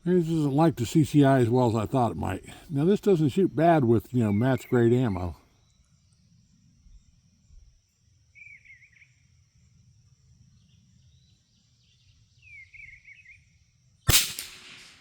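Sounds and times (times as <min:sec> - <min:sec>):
high insect drone: 0:00.0 - 0:14.1
rifle shot with echo: 0:14.1 - 0:15.0.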